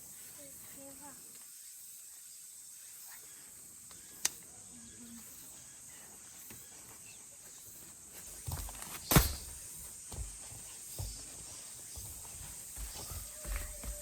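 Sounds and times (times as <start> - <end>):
insects chorus: 0.0 - 14.0.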